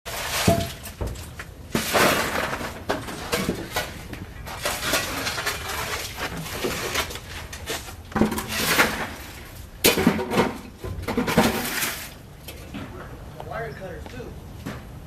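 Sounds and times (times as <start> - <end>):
metal tools scraping concrete: 1.8 - 10.5.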